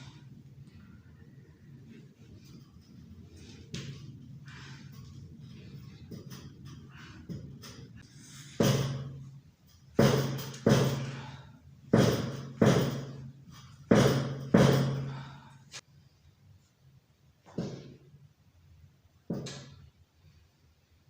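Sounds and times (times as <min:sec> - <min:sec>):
heavy knocks: 0:08.6 - 0:09.2, 0:10.0 - 0:11.2, 0:11.9 - 0:13.3, 0:13.9 - 0:15.2.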